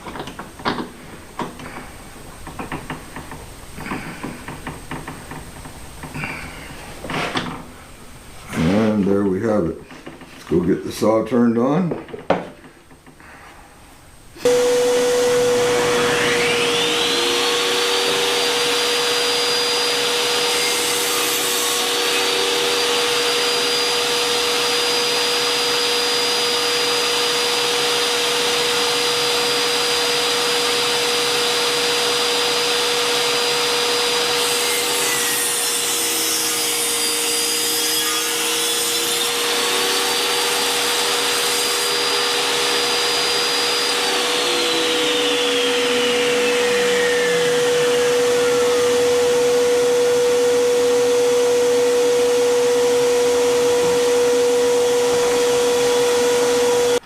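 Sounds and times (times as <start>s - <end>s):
saw cutting through wood: 14.4s - 57.0s
table saw blade whine: 14.4s - 57.0s.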